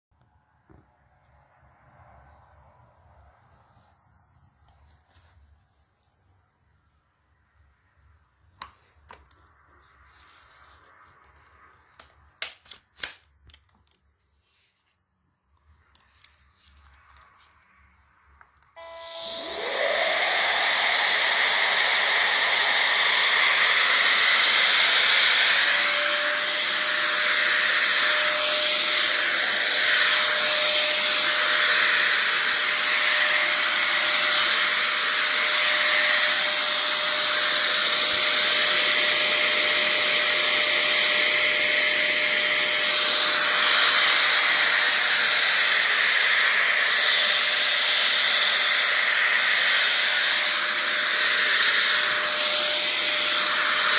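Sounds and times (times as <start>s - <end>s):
steady high whine: 18.8s - 53.9s
vacuum cleaner air rush: 18.8s - 53.9s.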